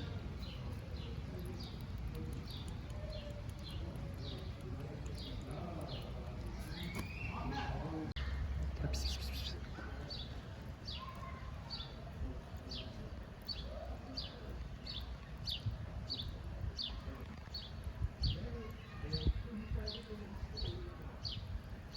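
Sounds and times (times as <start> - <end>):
small bird chirping: 0.0 - 7.6.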